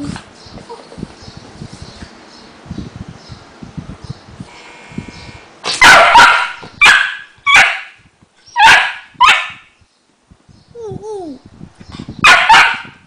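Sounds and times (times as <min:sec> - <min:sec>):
dog barking excitedly: 0:05.8 - 0:08.0, 0:08.6 - 0:09.7, 0:12.2 - 0:13.0.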